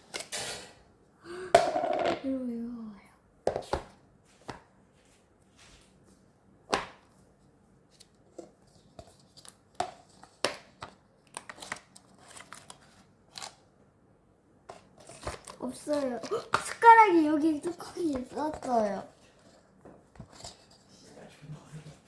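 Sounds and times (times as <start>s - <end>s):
cake packaging clicking and snapping: 9.2s - 13.6s, 14.7s - 17.0s.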